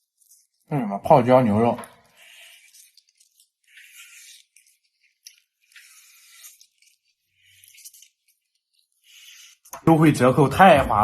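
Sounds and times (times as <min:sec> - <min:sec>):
crunchy chewing: 0:01.8 - 0:09.8.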